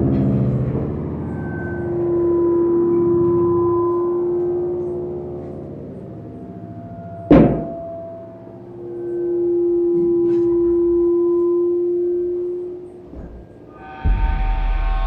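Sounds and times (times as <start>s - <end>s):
long ringing tones: 0.0s - 15.0s
sharp struck hit: 7.3s - 7.9s, 13.8s - 15.0s.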